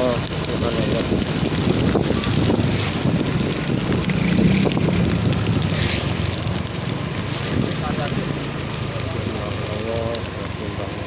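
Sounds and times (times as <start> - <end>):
vehicle engine humming: 0.0 - 11.0
wind buffeting microphone: 0.2 - 8.0.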